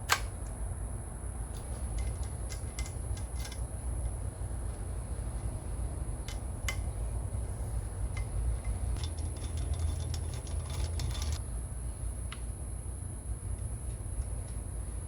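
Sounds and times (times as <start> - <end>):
steady hum: 0.0 - 15.0
bicycle mechanism clicking: 1.6 - 4.2, 6.2 - 7.0, 8.1 - 11.4.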